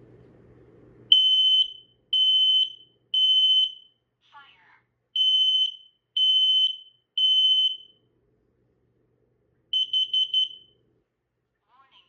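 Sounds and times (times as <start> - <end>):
alarm high-pitched beeps: 5.2 - 7.9, 9.8 - 10.6
alarm quick beeps: 9.8 - 10.6.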